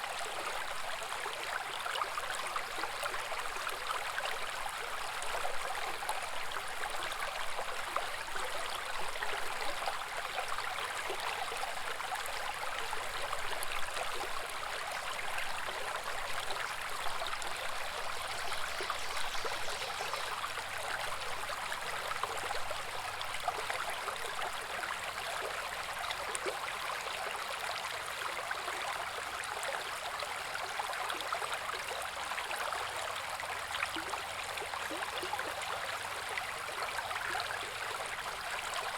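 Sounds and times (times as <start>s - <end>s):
brook water bubbling over rocks: 0.0s - 38.9s.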